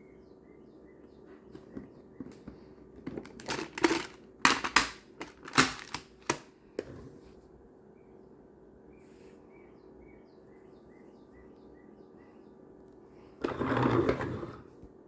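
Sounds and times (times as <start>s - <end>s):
plastic tiles clicking together: 3.2s - 6.4s.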